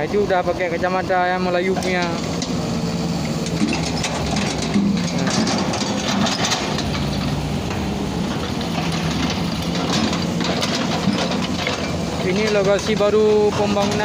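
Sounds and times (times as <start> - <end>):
engine running steadily: 0.0 - 14.0.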